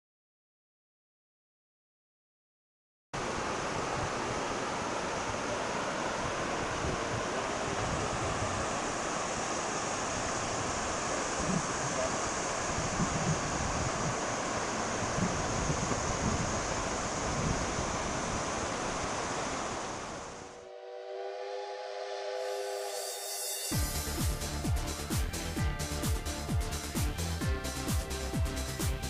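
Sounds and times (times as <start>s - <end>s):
floodwater rushing: 3.2s - 20.6s.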